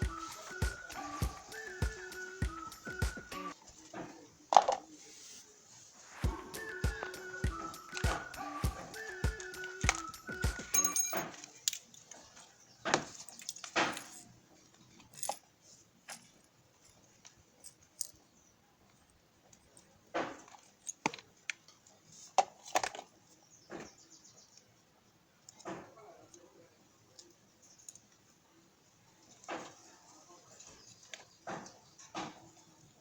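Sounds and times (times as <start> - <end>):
small parts and tools clinking: 10.7 - 12.4, 13.0 - 18.3, 18.9 - 21.8.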